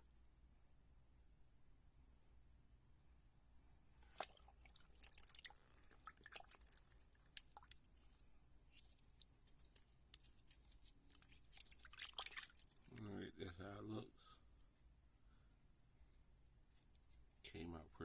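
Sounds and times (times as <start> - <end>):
water dripping: 4.0 - 8.2, 8.8 - 13.1
small clicks and scrapes: 4.9 - 13.1.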